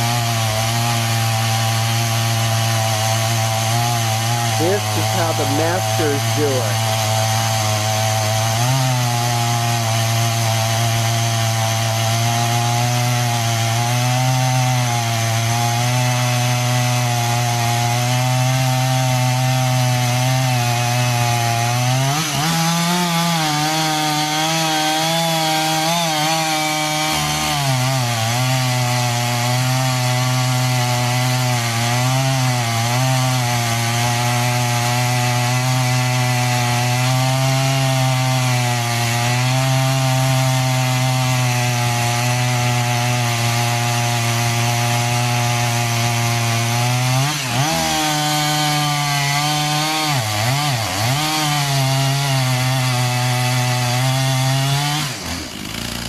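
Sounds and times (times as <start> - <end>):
chainsaw cutting wood: 0.0 - 56.0.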